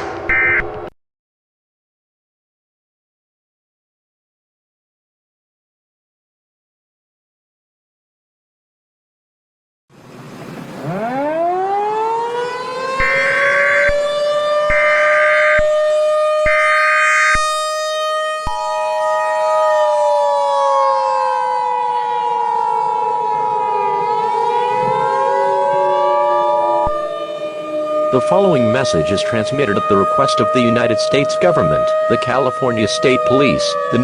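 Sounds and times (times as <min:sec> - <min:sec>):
siren wailing: 0:00.0 - 0:00.9, 0:10.3 - 0:34.0
two-tone attention signal: 0:00.3 - 0:00.7.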